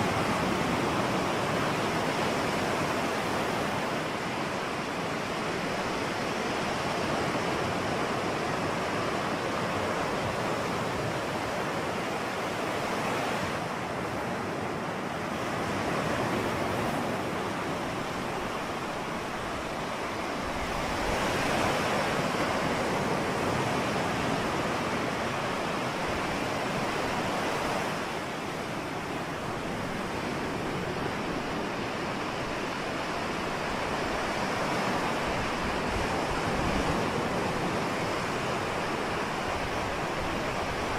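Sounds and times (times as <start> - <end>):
ocean waves washing: 0.0 - 40.9.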